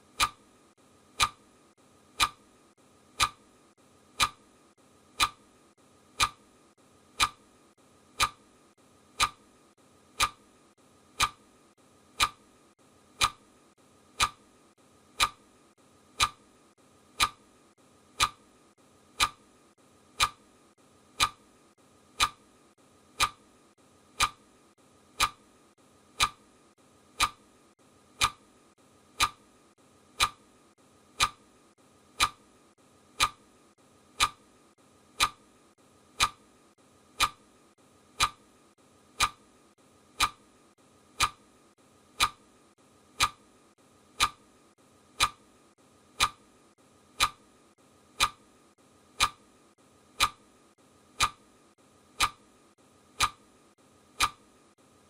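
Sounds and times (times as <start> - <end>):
timer clock ticking: 0.0 - 0.5, 1.1 - 6.5, 7.1 - 11.5, 12.1 - 16.5, 17.1 - 19.5, 20.1 - 20.5, 21.1 - 21.5, 22.1 - 22.5, 23.1 - 23.5, 24.1 - 26.5, 27.1 - 27.5, 28.1 - 29.5, 30.1 - 31.5, 32.1 - 32.5, 33.1 - 33.5, 34.1 - 34.5, 35.1 - 35.5, 36.1 - 36.5, 37.1 - 37.5, 38.1 - 38.5, 39.1 - 39.5, 40.1 - 40.5, 41.1 - 41.5, 42.1 - 42.5, 43.1 - 43.5, 44.1 - 44.5, 45.1 - 45.5, 46.1 - 46.5, 47.1 - 49.5, 50.1 - 50.5, 51.1 - 51.5, 52.1 - 53.5, 54.1 - 54.5.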